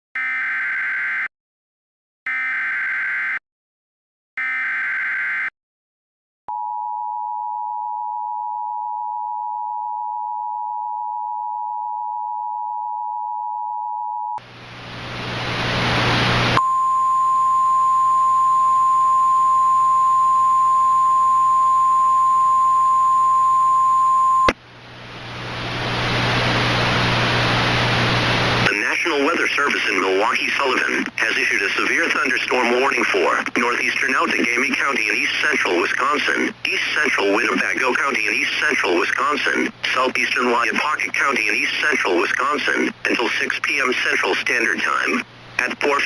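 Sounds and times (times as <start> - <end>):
radio static: 15.2 - 24.5, 25.9 - 46.0
steady warning tone: 16.5 - 24.6
two-tone attention signal: 16.6 - 24.5.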